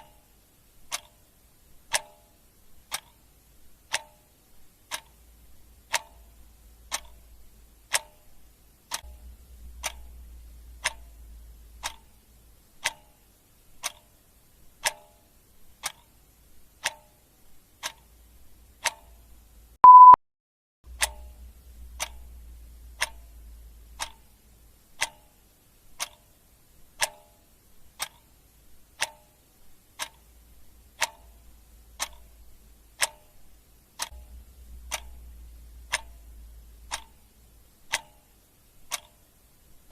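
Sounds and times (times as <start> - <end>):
clock ticking: 0.0 - 20.2, 20.9 - 39.9
short loud beep: 19.8 - 20.2.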